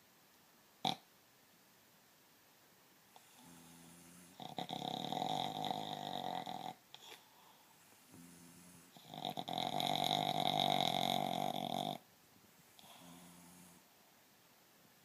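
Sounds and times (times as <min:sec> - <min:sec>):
quiet low breath: 0:03.1 - 0:04.5, 0:06.8 - 0:09.4, 0:12.4 - 0:14.2
person snoring: 0:03.2 - 0:06.8, 0:08.1 - 0:12.0.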